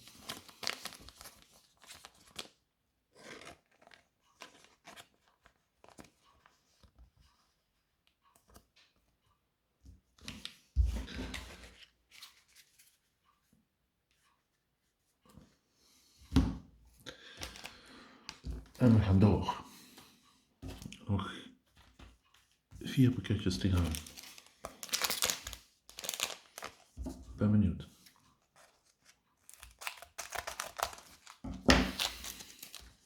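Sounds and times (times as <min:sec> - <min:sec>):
plastic crinkling and clicks: 0:23.6 - 0:27.0, 0:29.4 - 0:33.0.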